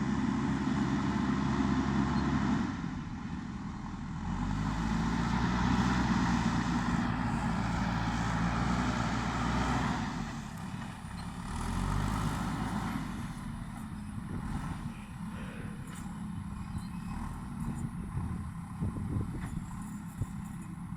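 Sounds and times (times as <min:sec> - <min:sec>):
diesel engine running under load: 0:00.0 - 0:20.9.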